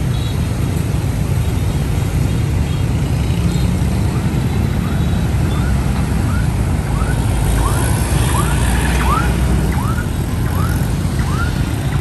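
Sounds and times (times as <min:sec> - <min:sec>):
traffic rumbling: 0:00.0 - 0:12.0
siren whooping: 0:04.8 - 0:12.0.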